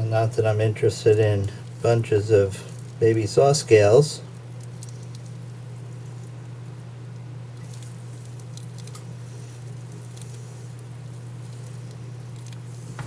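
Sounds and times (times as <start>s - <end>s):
low hum of room equipment: 0.0s - 13.0s
light ticks and rustles: 2.6s - 3.1s, 4.3s - 13.0s.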